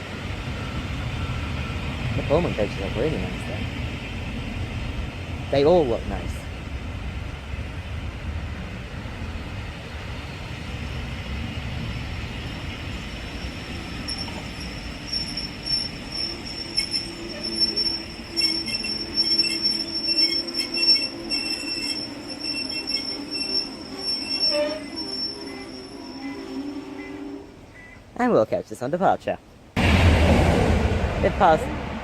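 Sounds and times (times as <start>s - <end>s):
train rumble: 0.0s - 28.1s, 29.7s - 32.0s
train wheel squeal: 11.8s - 28.0s.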